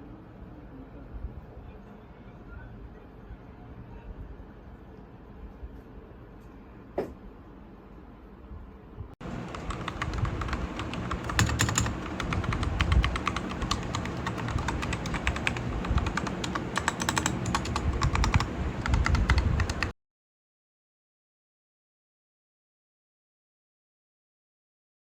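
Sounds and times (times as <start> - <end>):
typing on mechanical keyboard: 9.3 - 19.9.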